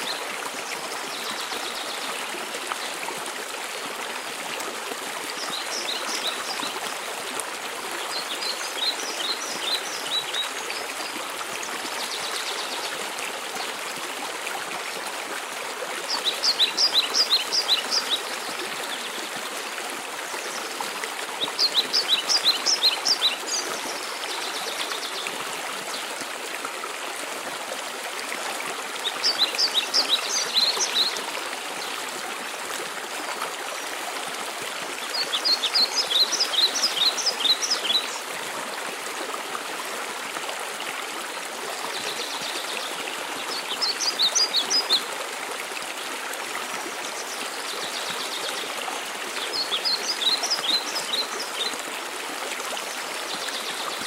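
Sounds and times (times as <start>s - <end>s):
songbird singing: 16.1s - 19.2s, 21.4s - 25.3s, 29.0s - 31.9s, 35.1s - 38.3s.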